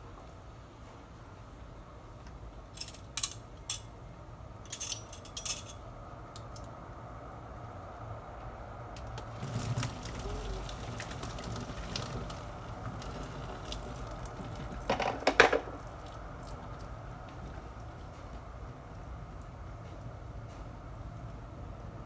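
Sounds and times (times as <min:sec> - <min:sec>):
clatter of knocks: 0:14.7 - 0:15.8.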